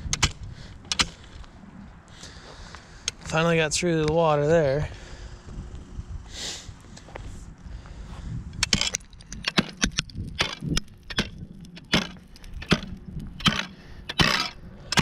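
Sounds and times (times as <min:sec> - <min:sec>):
ice bar chopping ice: 0:11.9 - 0:15.0.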